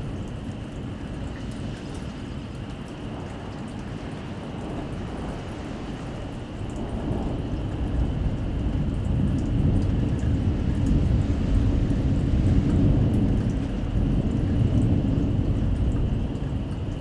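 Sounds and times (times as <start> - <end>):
steady rain: 0.0 - 17.0
low rumbling thunder roar: 6.8 - 17.0.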